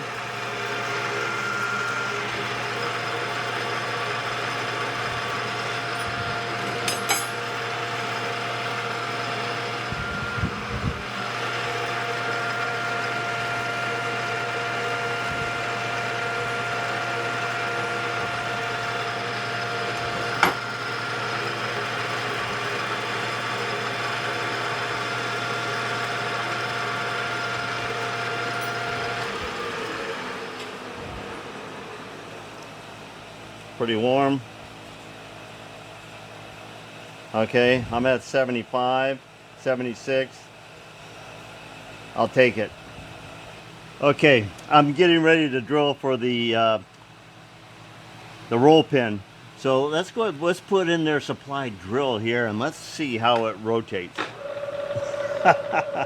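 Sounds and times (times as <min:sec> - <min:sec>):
metal lathe humming with whine: 0:00.0 - 0:37.4, 0:54.2 - 0:56.0.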